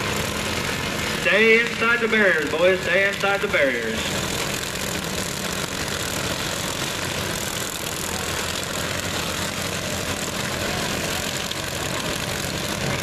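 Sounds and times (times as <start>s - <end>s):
riding lawn mower engines running: 0.0s - 13.0s.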